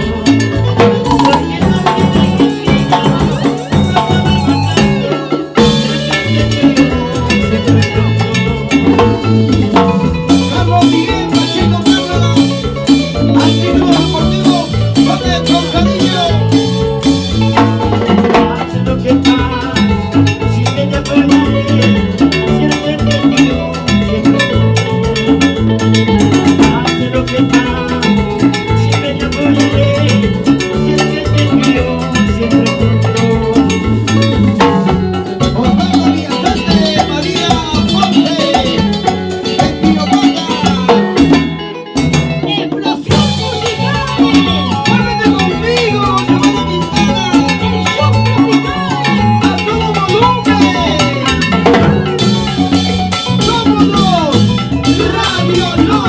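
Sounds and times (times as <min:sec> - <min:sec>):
band playing salsa music: 0:00.0 - 0:56.0.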